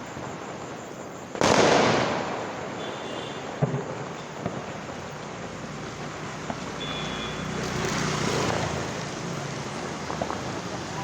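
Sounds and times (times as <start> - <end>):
street traffic noise: 2.3 - 11.0
vehicle passing rush: 4.7 - 11.0.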